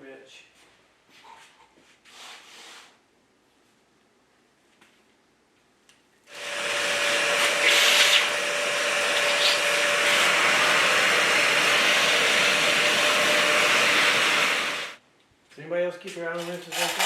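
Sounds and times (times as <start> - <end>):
electric motor fan whining: 6.3 - 15.0.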